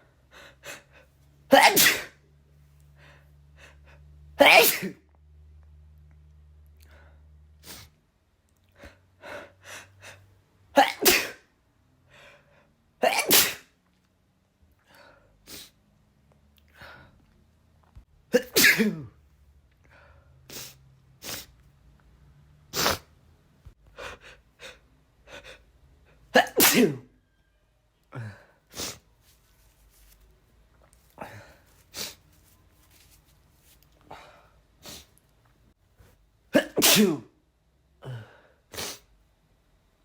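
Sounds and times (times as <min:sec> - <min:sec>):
man sneezing: 0:01.5 - 0:02.2, 0:04.4 - 0:05.0, 0:10.8 - 0:11.4, 0:13.0 - 0:13.7, 0:18.3 - 0:19.1, 0:22.8 - 0:23.1, 0:26.3 - 0:27.1, 0:36.6 - 0:37.3, 0:38.0 - 0:39.1
sniffs and breaths: 0:30.8 - 0:35.3.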